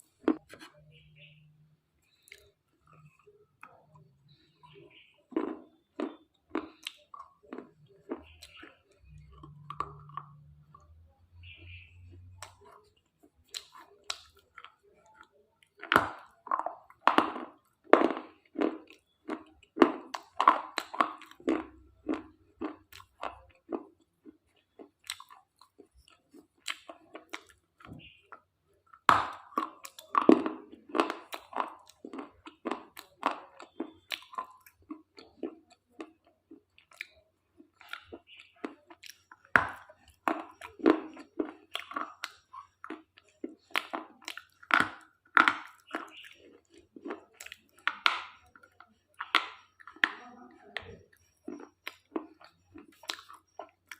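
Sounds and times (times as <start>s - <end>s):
chewing and crunching slate: 2.1s - 53.9s.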